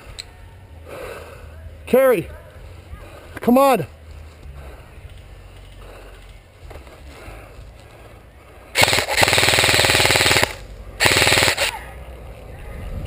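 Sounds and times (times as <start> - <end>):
airsoft gun automatic bursts: 8.8 - 11.8.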